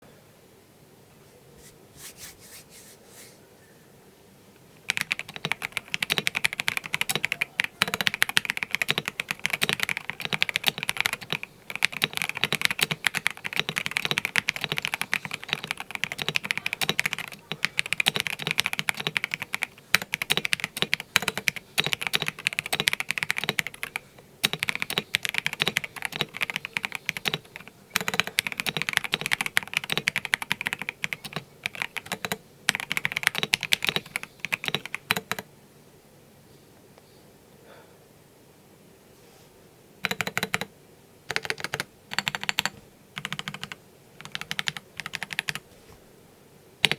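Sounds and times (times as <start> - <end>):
mechanical keyboard typing: 4.8 - 35.5, 40.0 - 40.7, 41.3 - 45.6.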